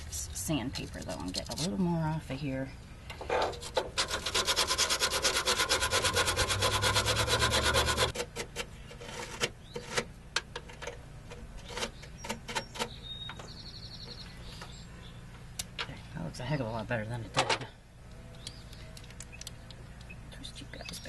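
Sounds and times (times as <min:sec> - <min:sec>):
sandpaper scraping metal: 0:03.3 - 0:10.1.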